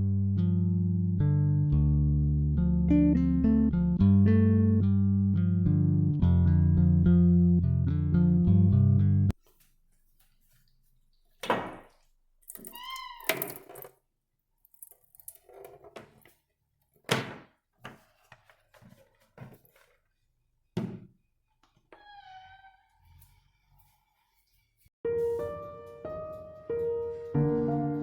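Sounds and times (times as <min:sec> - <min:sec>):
short squeaking tones: 0:22.0 - 0:23.5.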